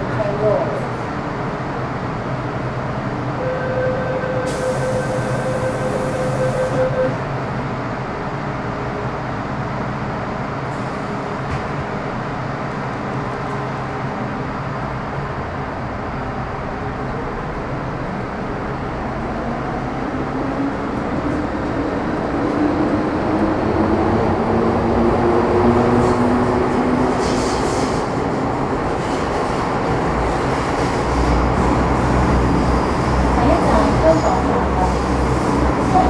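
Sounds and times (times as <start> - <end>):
train wheels rumbling: 16.8 - 36.0.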